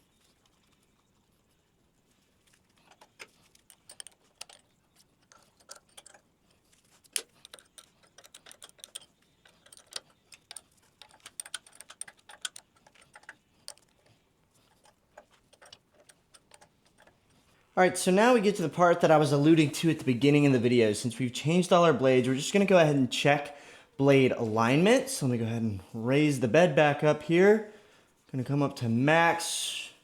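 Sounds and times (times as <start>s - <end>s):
wrench clicking and tapping metal: 7.2s - 13.9s.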